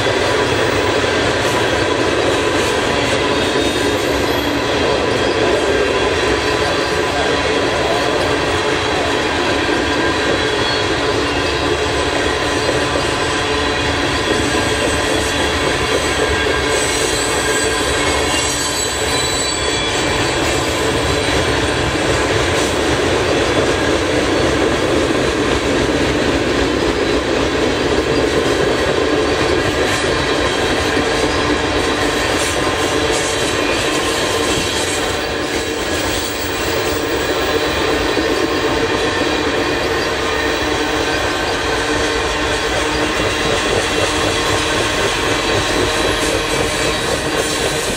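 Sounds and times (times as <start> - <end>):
train wheels rumbling on rail: 0.0 - 47.9
high wheel squealing: 3.6 - 21.6, 33.1 - 47.9.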